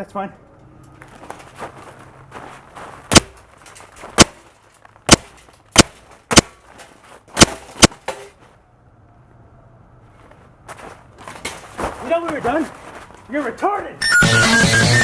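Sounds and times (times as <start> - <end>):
sharp cracking impacts: 3.1 - 8.4.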